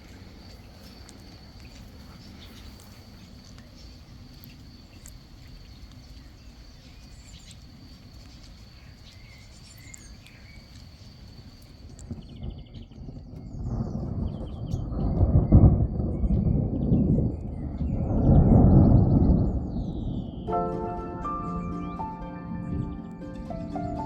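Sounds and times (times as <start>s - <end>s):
bird chirps: 8.2s - 11.3s
thunder rumbling: 12.1s - 24.0s
steady high-pitched tone: 20.5s - 24.0s.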